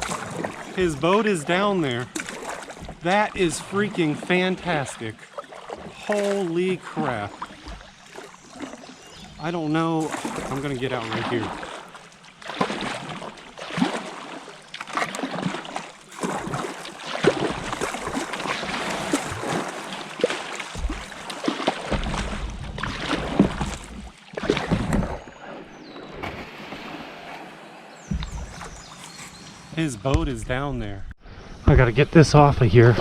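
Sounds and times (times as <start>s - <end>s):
water splashing: 0.0s - 30.7s
plastic hull knocking and scraping: 28.0s - 28.9s.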